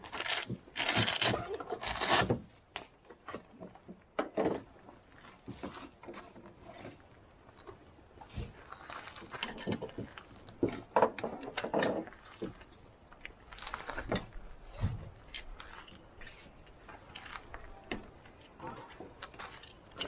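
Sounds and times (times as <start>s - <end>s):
objects being handled: 0.0s - 2.4s.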